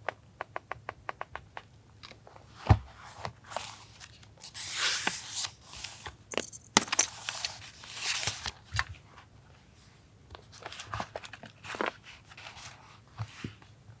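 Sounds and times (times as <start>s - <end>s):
small sharp clicks and taps: 0.0s - 2.2s
paper rustling and crinkling: 2.6s - 9.0s.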